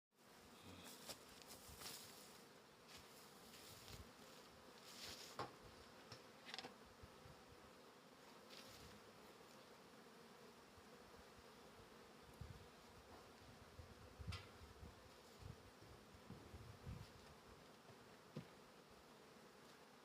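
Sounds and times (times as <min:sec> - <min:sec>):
honey bees buzzing: 0:00.2 - 0:20.0.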